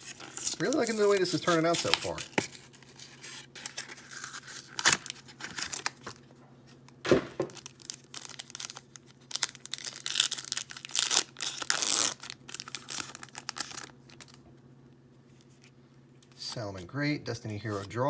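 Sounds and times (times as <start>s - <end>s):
foil wrapper crinkling and tearing: 0.0s - 6.3s, 7.5s - 14.4s
knock: 7.1s - 7.5s.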